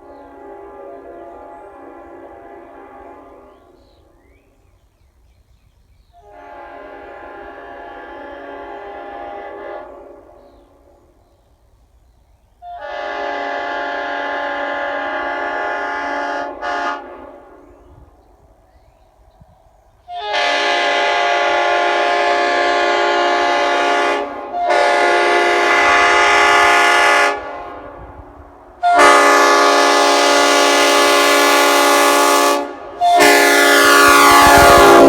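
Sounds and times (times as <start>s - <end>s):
train horn blasts: 0.0s - 4.4s, 6.1s - 11.2s, 12.6s - 18.1s, 20.0s - 35.0s.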